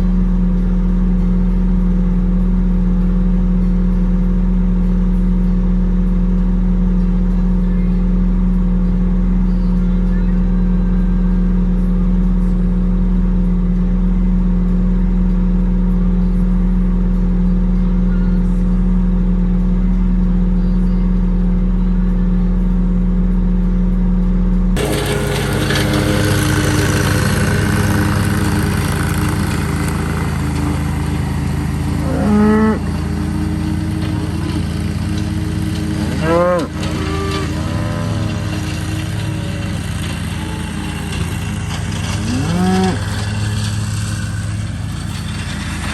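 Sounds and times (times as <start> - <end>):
engine humming: 0.0 - 45.9
cattle mooing: 31.8 - 34.5, 35.9 - 43.4.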